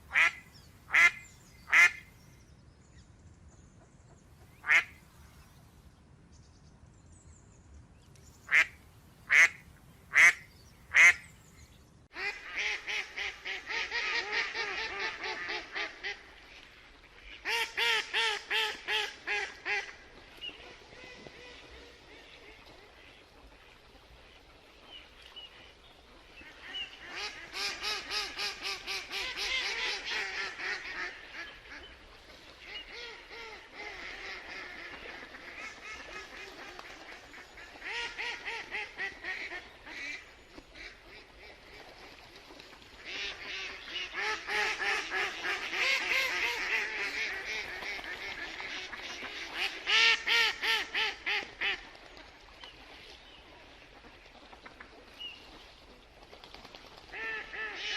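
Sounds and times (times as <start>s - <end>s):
ducks quacking: 0.1s - 2.1s, 4.6s - 5.0s, 8.5s - 11.2s, 12.2s - 16.3s, 43.0s - 51.9s.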